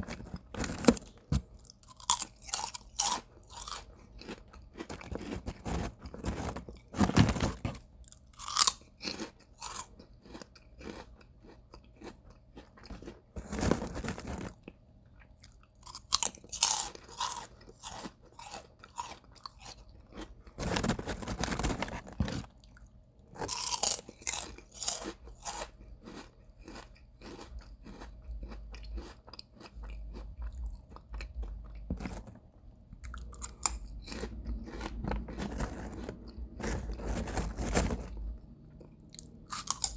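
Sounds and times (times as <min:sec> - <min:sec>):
crunching potato chips: 0:00.0 - 0:39.9.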